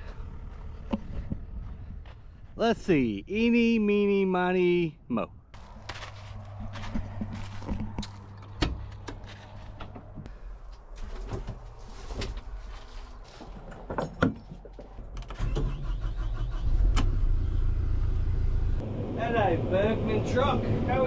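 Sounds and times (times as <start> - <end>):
truck engine starting and running: 15.0 - 21.0.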